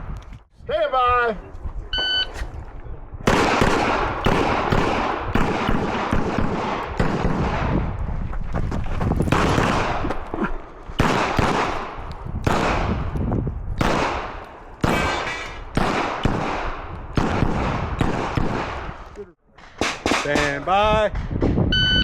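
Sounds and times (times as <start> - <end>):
pistol shots: 3.3 - 7.8, 9.3 - 13.1, 13.8 - 19.0, 19.8 - 20.6.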